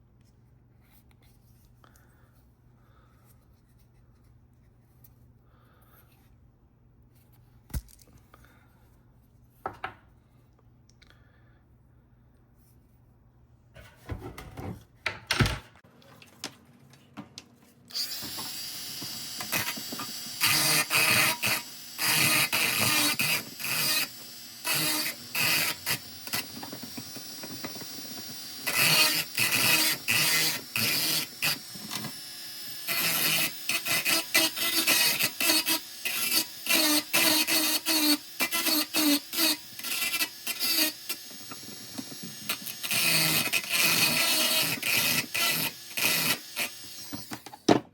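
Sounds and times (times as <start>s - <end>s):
power tool grinding metal: 17.9s - 47.7s.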